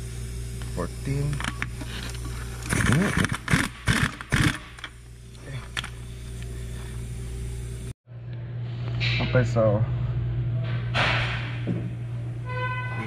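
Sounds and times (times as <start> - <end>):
steady low hum: 0.0 - 13.0
power tool spinning nut: 1.4 - 5.0.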